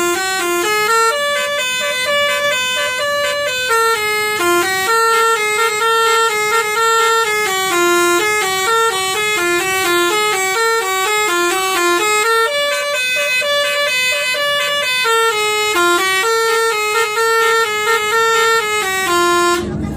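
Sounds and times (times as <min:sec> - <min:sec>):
multi-tone bus horn melody: 0:00.0 - 0:19.9.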